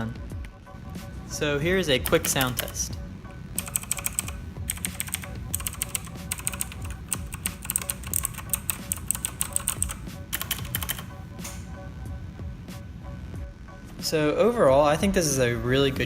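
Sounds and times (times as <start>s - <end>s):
mechanical keyboard typing: 2.0s - 2.8s, 3.6s - 11.1s.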